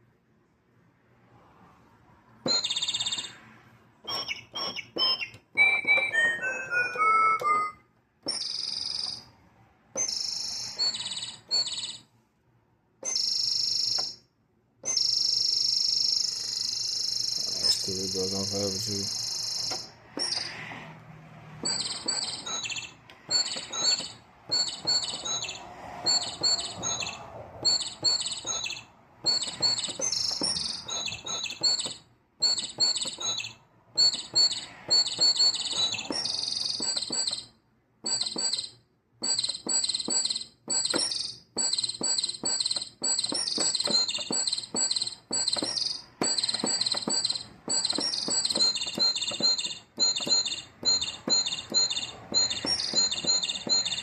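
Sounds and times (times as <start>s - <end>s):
sampled bird chirps from keyboard: 2.5s - 3.4s, 4.0s - 6.4s, 10.0s - 12.1s, 14.8s - 20.6s, 21.6s - 37.5s, 38.1s - 54.0s.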